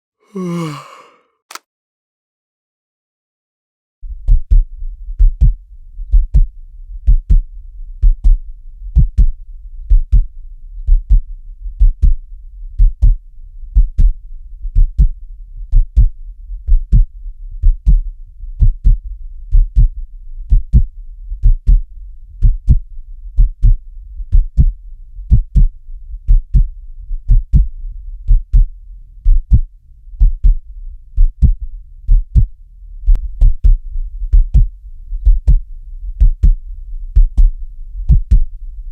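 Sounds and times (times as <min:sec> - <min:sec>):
heartbeat thumps: 0:09.0 - 0:10.3, 0:31.2 - 0:32.5, 0:34.4 - 0:36.6, 0:37.2 - 0:37.5, 0:38.1 - 0:38.5.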